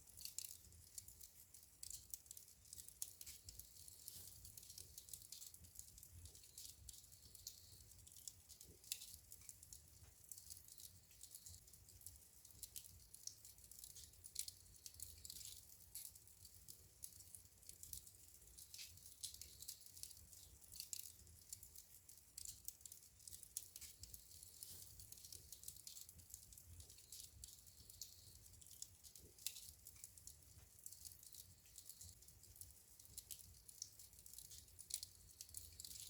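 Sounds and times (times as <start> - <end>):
wood fire crackling and popping: 0.0 - 36.0.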